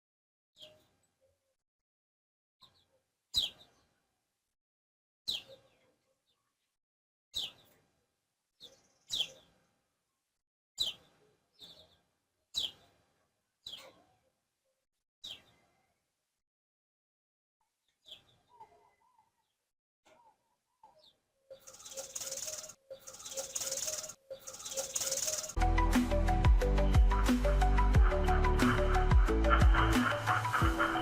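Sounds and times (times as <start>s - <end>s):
small bird chirping: 0.6s - 1.5s, 2.6s - 4.1s, 5.3s - 6.8s, 7.4s - 8.0s, 8.6s - 9.9s, 10.8s - 13.0s, 13.6s - 14.3s, 15.2s - 15.8s, 17.8s - 25.6s.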